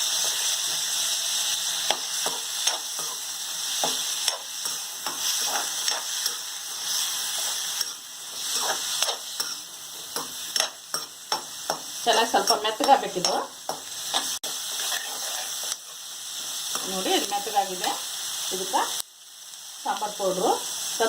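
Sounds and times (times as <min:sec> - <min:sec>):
food sizzling in hot oil: 0:00.0 - 0:21.0
spatula scraping pan: 0:01.9 - 0:15.9.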